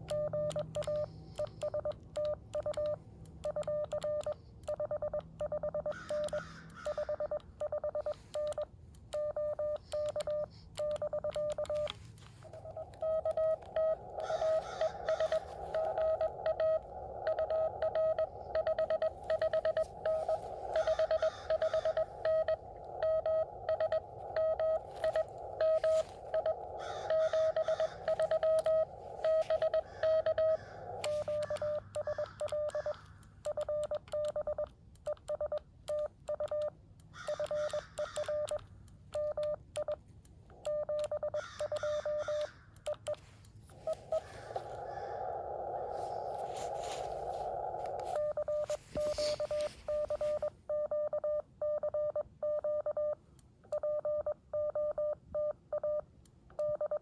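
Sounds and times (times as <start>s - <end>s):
morse code tone: 0.0s - 36.7s, 45.5s - 53.2s
radio band noise hiss: 11.8s - 31.9s, 43.2s - 50.5s.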